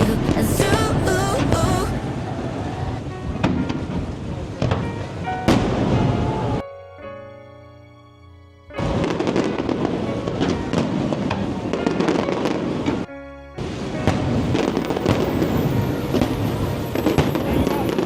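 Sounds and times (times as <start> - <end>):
music: 0.0 - 18.0
fireworks crackling and popping: 8.9 - 13.0, 13.6 - 18.0.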